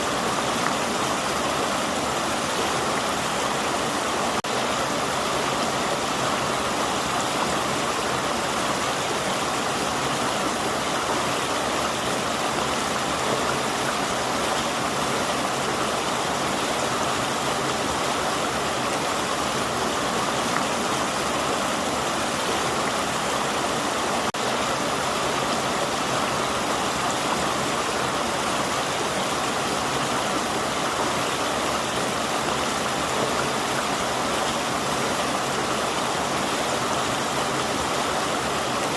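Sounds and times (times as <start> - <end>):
river water flowing over rocks: 0.0 - 38.9.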